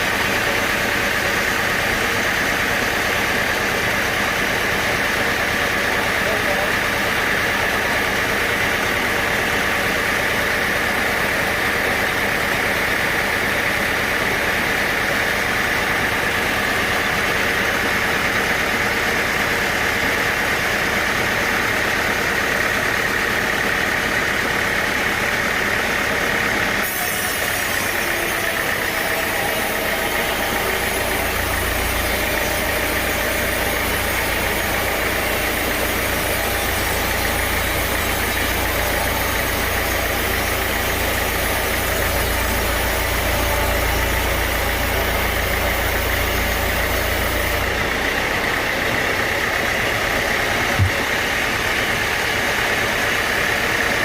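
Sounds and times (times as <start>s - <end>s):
sawmill saw drone with whine: 0.0s - 54.0s.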